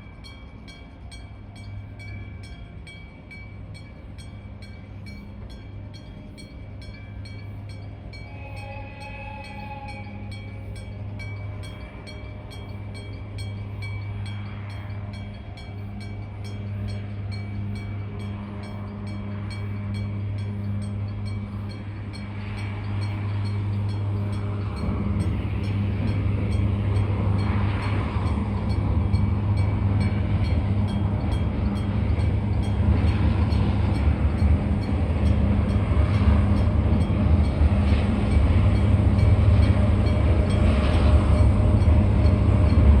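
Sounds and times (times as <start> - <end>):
diesel locomotive drone: 0.0 - 43.0.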